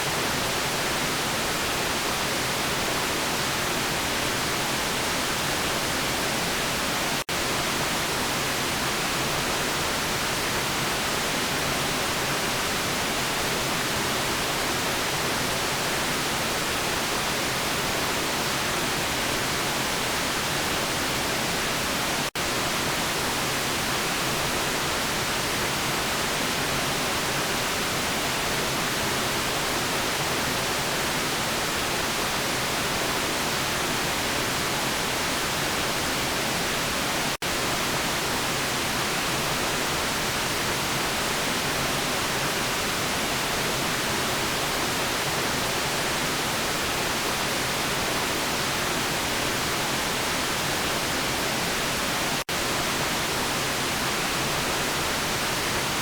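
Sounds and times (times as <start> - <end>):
white noise hiss: 0.0 - 56.0.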